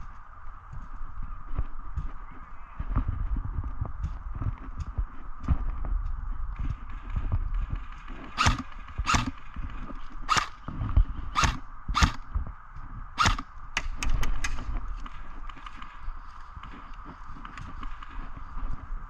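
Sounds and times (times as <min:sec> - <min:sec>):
low rumble of wind: 0:00.0 - 0:19.0
airsoft gun shots: 0:08.4 - 0:09.3, 0:10.3 - 0:10.6, 0:11.4 - 0:12.2, 0:13.2 - 0:14.6.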